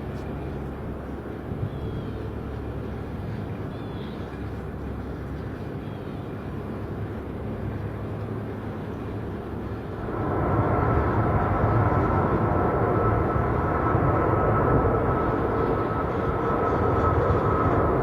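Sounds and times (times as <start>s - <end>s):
jet engines rumbling: 7.4s - 18.0s.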